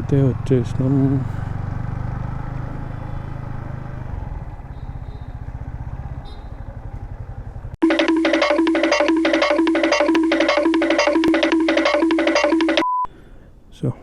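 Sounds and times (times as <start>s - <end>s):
music with percussive beat: 7.8s - 12.9s.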